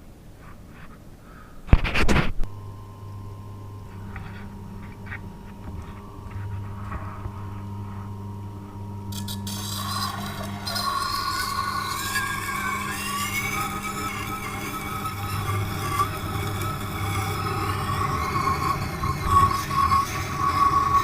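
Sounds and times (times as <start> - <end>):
sharpening machine motor humming: 2.5 - 21.0
knife blade scraping on wheel: 9.1 - 21.0.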